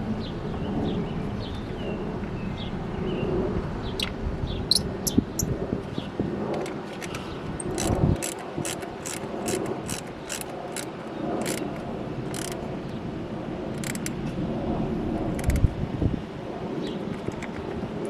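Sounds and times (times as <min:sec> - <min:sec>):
ratchet wrench clicking: 0:07.6 - 0:12.6, 0:13.7 - 0:14.2, 0:15.3 - 0:15.7.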